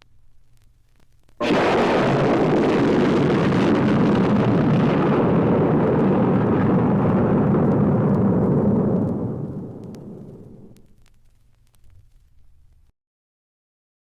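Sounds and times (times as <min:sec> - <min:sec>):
dense rushing noise: 0:01.4 - 0:10.8.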